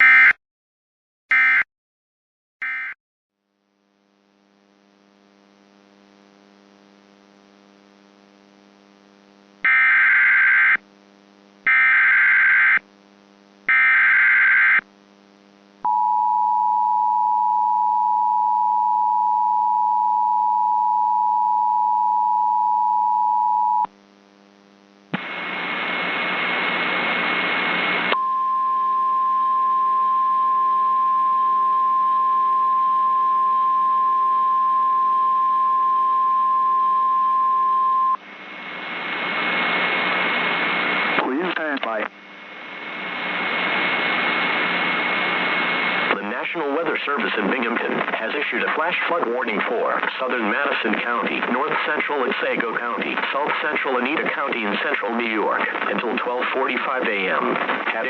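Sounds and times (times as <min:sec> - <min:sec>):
burst of static: 0:25.0 - 0:28.1, 0:38.4 - 0:58.0.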